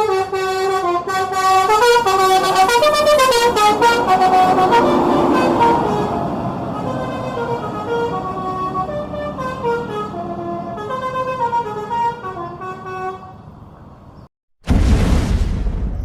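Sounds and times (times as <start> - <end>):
multi-tone bus air horn tune: 0.0 - 13.4
loud rushing burst: 1.6 - 7.1.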